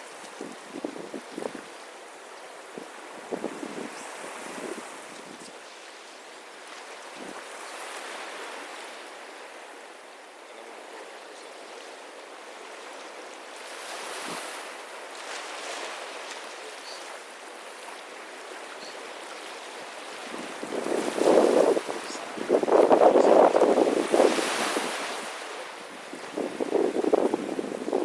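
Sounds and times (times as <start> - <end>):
sea waves washing ashore: 0.0 - 28.0.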